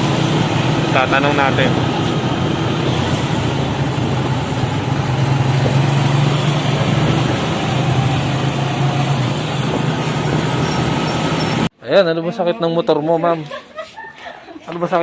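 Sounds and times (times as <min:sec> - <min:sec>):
motorcycle engine running: 0:00.0 - 0:11.7
road and wind noise: 0:00.0 - 0:11.7.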